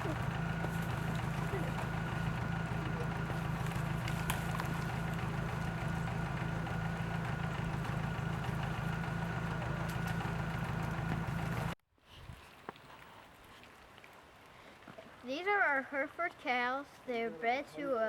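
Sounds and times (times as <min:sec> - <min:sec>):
vehicle engine droning: 0:00.0 - 0:11.8.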